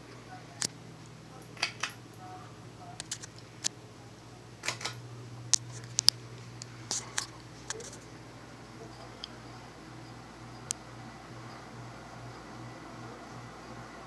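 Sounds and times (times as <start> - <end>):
ceiling fan motor humming: 0.0 - 14.0
sharp clicks: 1.4 - 2.3, 3.0 - 3.8, 4.6 - 8.1.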